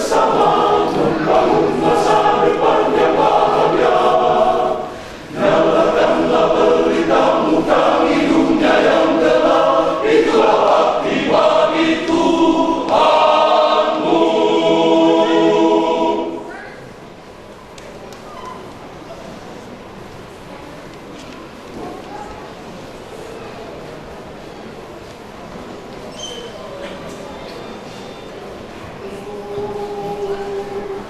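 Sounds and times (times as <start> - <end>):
men's choir singing: 0.0 - 16.5.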